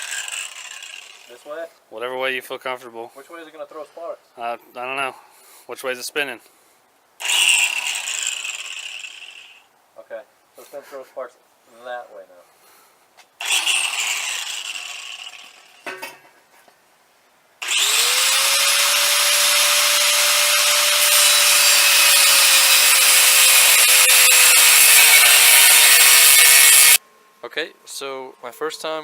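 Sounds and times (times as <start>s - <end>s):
angle grinder cutting metal pipe: 0.0s - 1.4s, 7.2s - 9.6s, 13.4s - 15.8s, 17.6s - 27.0s.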